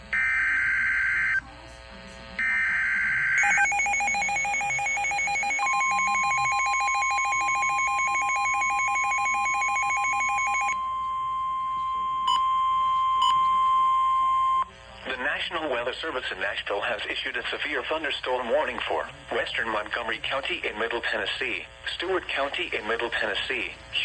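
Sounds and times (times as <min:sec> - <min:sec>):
steady warning alarm tone: 0:00.0 - 0:01.4, 0:02.4 - 0:14.7
fast electronic beeping: 0:02.5 - 0:14.7.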